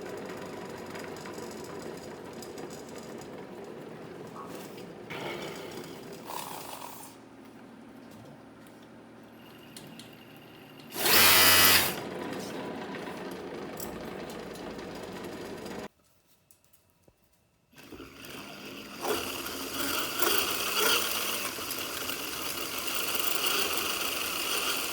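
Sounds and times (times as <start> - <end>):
electric bike motor whirring: 9.3 - 15.9, 17.8 - 24.9.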